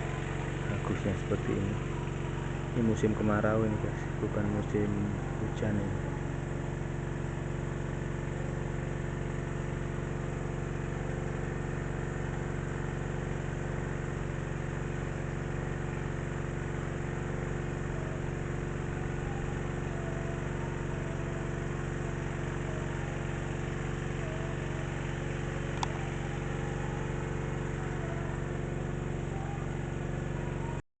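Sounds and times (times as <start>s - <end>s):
small water pump engine running: 0.0s - 30.8s.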